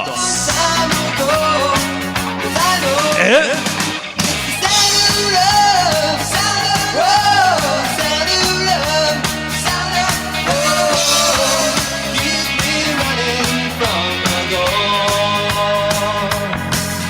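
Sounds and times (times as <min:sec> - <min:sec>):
bass guitar: 0:00.0 - 0:17.0
drums: 0:00.0 - 0:17.0
electric guitar: 0:00.0 - 0:17.0
person singing: 0:00.0 - 0:17.0.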